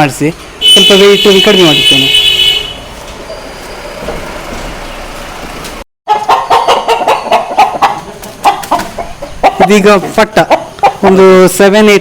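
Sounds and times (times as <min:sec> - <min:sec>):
chickens clucking loudly: 0:06.1 - 0:11.6.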